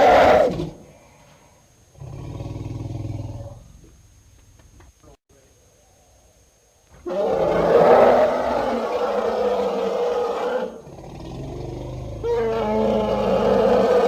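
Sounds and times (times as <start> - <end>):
elephant roaring call: 0.0 - 0.8, 7.0 - 14.0
elephant low rumble: 1.9 - 4.0, 10.7 - 14.0.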